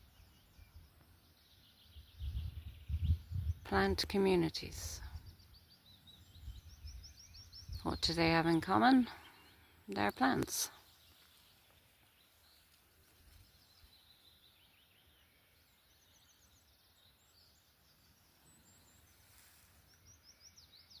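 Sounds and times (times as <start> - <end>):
songbirds chirping and trilling: 0.0 - 21.0
background hiss: 9.0 - 21.0.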